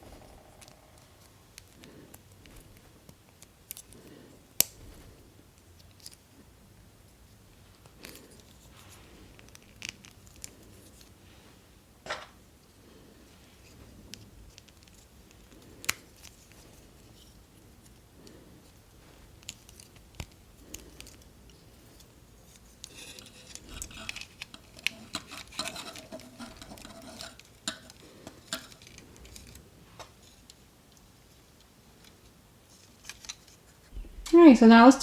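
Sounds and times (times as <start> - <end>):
plastic parts clicking and rattling: 19.4 - 33.6.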